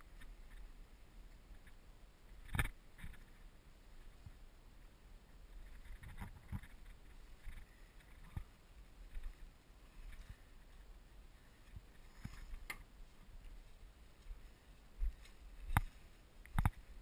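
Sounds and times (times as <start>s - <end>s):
rustling of handling: 5.3s - 17.0s.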